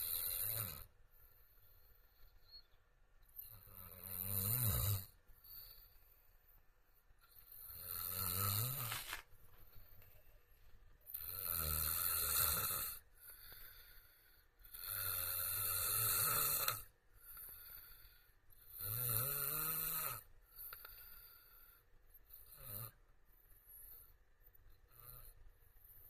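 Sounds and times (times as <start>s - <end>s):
man snoring: 0.0s - 0.9s, 3.5s - 5.2s, 7.6s - 8.9s, 11.1s - 13.0s, 14.7s - 16.9s, 18.7s - 20.3s, 22.5s - 23.0s.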